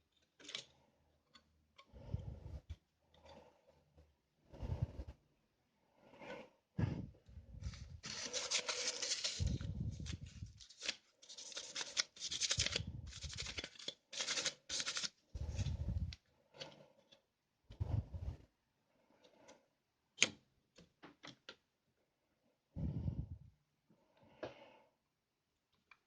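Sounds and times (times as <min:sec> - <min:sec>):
scratching and rubbing: 0:07.5 - 0:17.0.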